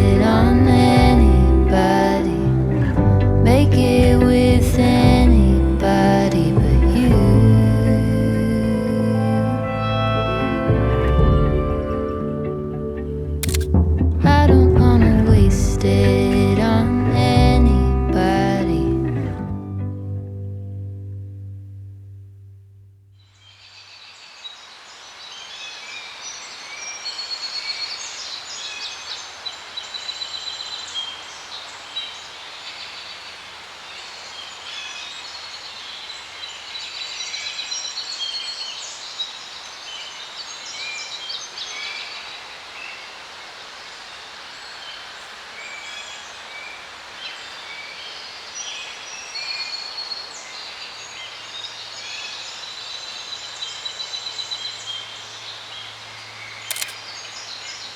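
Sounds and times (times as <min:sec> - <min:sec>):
songbirds chirping: 0:11.9 - 0:57.9.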